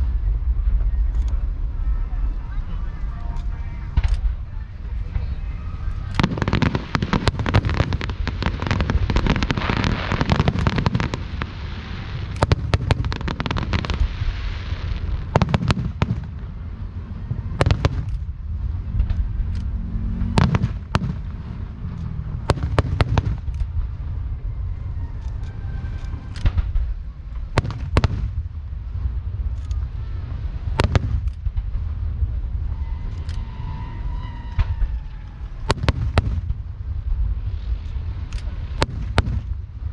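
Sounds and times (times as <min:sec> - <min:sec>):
fireworks crackling barrage: 0:00.0 - 0:39.9
firework shells bursting: 0:05.2 - 0:16.6, 0:25.3 - 0:28.5, 0:32.6 - 0:36.9, 0:37.5 - 0:39.9.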